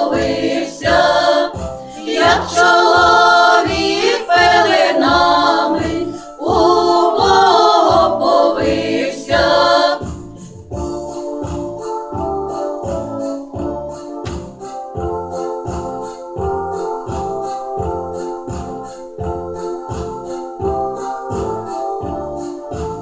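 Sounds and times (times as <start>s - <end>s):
group singing a carol: 0.0s - 10.5s
steady low beat: 0.0s - 18.0s.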